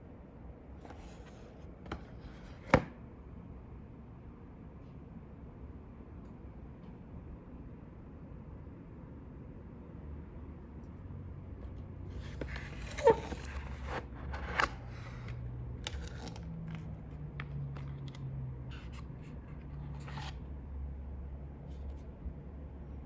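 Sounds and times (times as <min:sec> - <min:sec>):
squeaky scrape: 0:12.1 - 0:16.8, 0:18.7 - 0:20.4
packaging rustling and scraping: 0:12.1 - 0:20.4.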